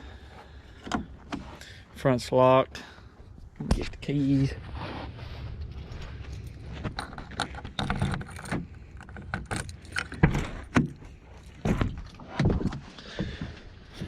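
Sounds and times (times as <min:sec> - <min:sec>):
keys jangling: 0:07.0 - 0:10.2.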